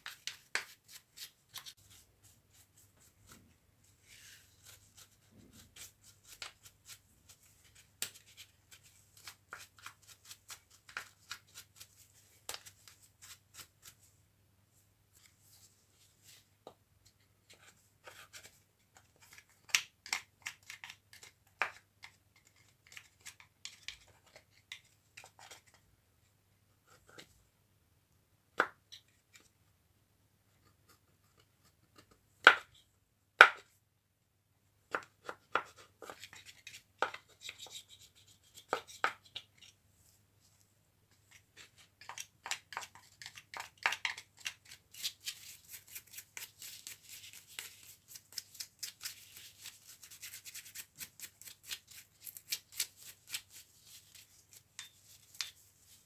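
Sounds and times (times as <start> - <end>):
scraping and rubbing: 0.0 - 14.1.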